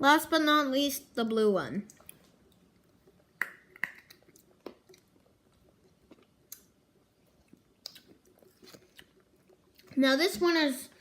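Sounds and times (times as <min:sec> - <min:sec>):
person chewing crunchy candy: 0:01.9 - 0:10.0.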